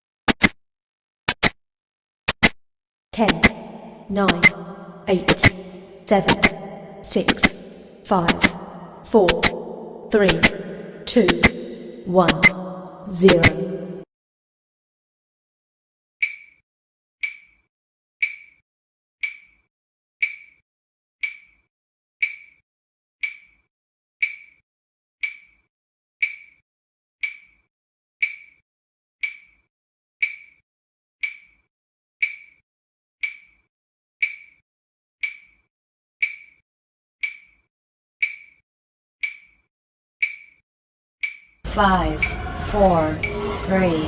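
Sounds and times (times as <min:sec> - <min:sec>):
sharp high-pitched timer tick: 0:03.2 - 0:14.0.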